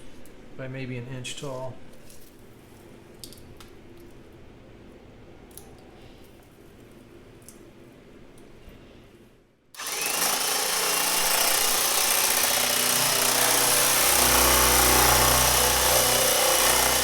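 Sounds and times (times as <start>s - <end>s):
power tool running with rushing noise: 9.8s - 17.0s
power tool spinning up: 9.8s - 17.0s.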